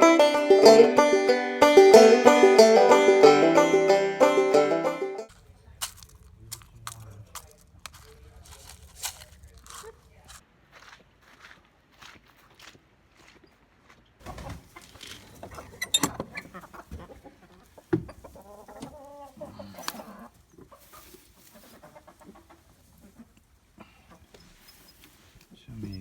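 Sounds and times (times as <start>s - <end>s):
chickens clucking: 0.0s - 5.3s, 14.2s - 26.0s
crunching and clicking: 5.3s - 10.5s.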